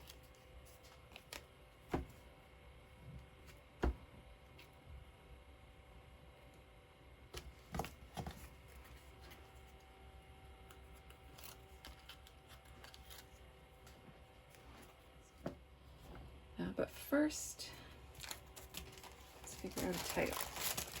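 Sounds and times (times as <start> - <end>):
low room hum: 0.0 - 21.0.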